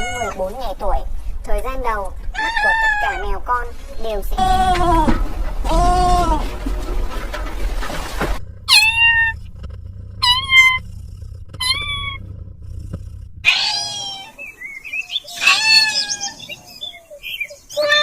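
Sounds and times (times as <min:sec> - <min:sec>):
kittens meowing: 0:00.0 - 0:00.5, 0:02.3 - 0:03.7, 0:08.7 - 0:09.5, 0:10.2 - 0:10.9, 0:11.5 - 0:12.2, 0:13.4 - 0:14.4, 0:15.1 - 0:17.2, 0:17.8 - 0:18.0.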